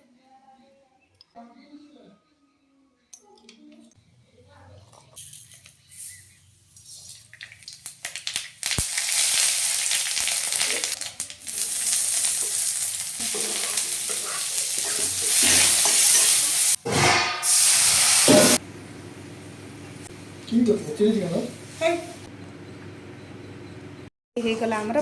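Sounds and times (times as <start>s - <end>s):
food sizzling in hot oil: 6.0s - 18.6s.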